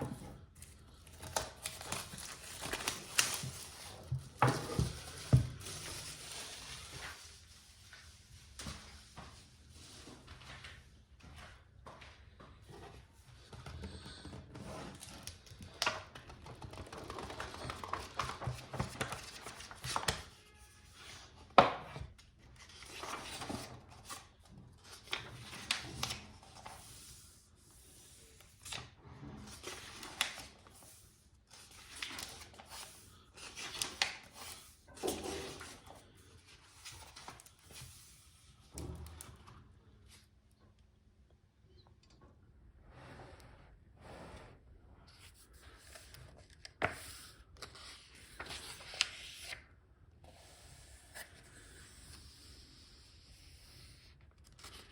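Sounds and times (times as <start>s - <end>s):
packaging rustling and tearing: 1.1s - 7.2s.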